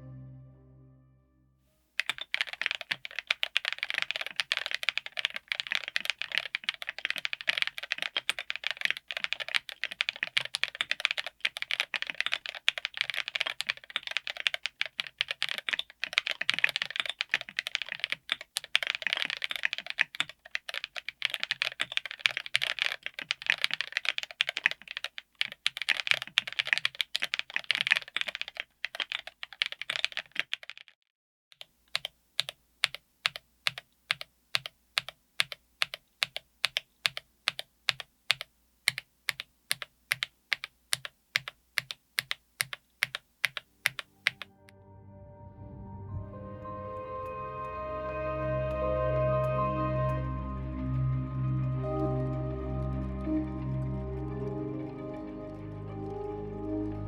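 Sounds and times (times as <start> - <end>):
fast mechanical keyboard typing: 2.0 - 31.0, 31.6 - 44.5.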